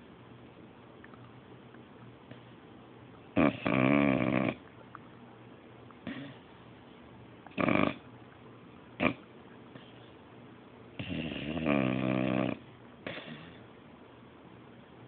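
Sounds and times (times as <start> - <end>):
dog snoring: 3.3 - 4.6, 7.5 - 8.1, 9.0 - 9.2, 11.0 - 13.6.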